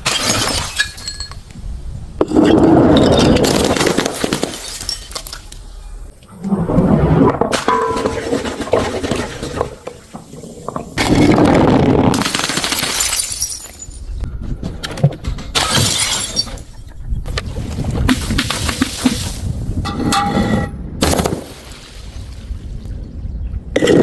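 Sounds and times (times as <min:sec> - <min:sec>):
glass bottles smashing: 0:00.0 - 0:01.4, 0:02.3 - 0:05.6, 0:07.5 - 0:08.7, 0:12.8 - 0:14.0, 0:15.6 - 0:16.7
glass shards clinking: 0:00.0 - 0:01.4, 0:13.0 - 0:14.0, 0:15.6 - 0:16.7.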